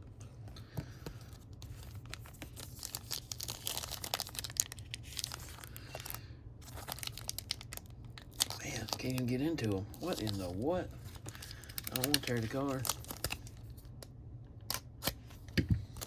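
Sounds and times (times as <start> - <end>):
plastic wrapper crinkling: 1.2 - 14.1.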